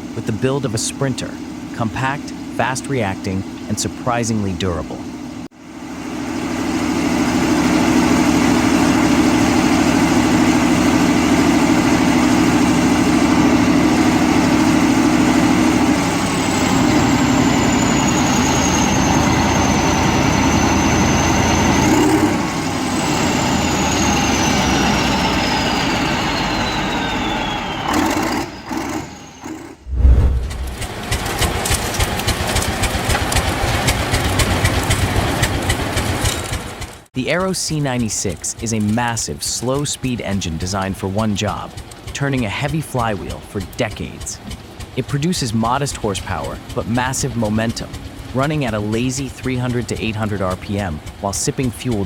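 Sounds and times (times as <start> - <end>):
diesel engine running: 0.0 - 37.1, 38.2 - 52.0
high whine falling in pitch: 29.8 - 31.0.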